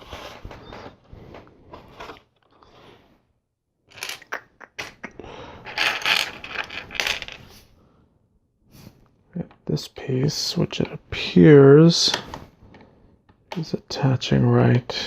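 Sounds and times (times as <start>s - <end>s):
loose plastic pieces rattling: 3.9s - 4.3s, 5.6s - 7.4s
plastic pieces clicking: 3.9s - 5.0s, 5.6s - 7.4s.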